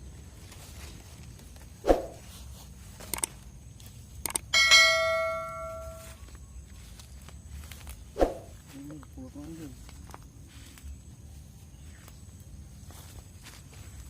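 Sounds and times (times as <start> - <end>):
sharp clicks: 3.0 - 3.4, 4.2 - 4.5
metallic ring: 4.5 - 6.2.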